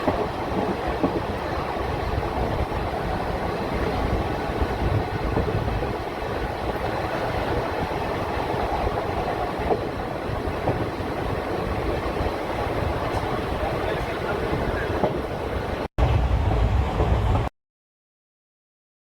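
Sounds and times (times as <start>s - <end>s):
train wheels rumbling: 0.0s - 17.5s
faint rail joint clicks: 13.0s - 13.4s.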